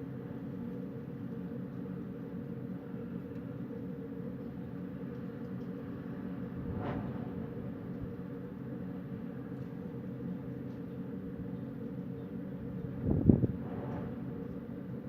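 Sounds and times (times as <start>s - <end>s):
wind blowing: 6.3s - 9.4s.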